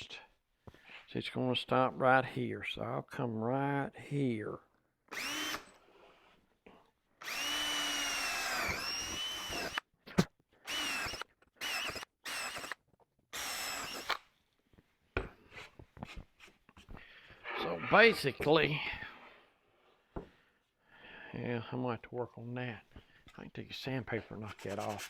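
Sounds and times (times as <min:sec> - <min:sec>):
cordless drill boring into plywood: 0:05.1 - 0:05.8, 0:07.2 - 0:09.9, 0:10.7 - 0:14.2.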